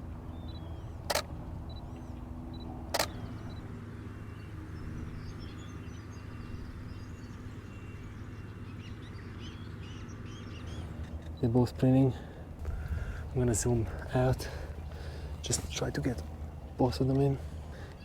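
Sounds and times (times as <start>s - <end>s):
steady low hum: 0.0s - 18.0s
small birds chirping: 0.1s - 18.0s
camera shutter click: 1.1s - 1.3s, 2.9s - 3.3s.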